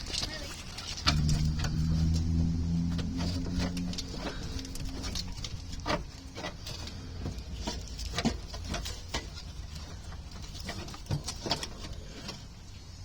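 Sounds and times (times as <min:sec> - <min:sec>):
faint low hum: 0:00.0 - 0:13.0
tools and metal parts clicking: 0:02.9 - 0:12.6.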